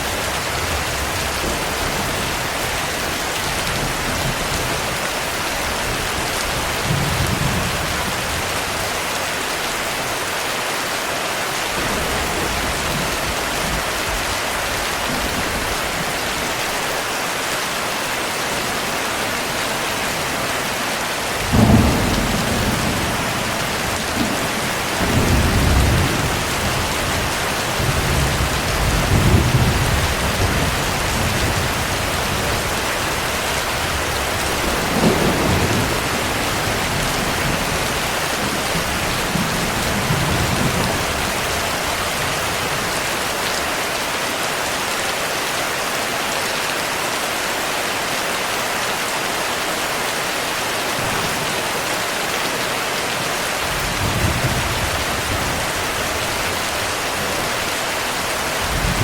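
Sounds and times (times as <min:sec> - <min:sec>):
heavy rain: 0:00.0 - 0:59.0
thunder rolling: 0:21.4 - 0:41.8.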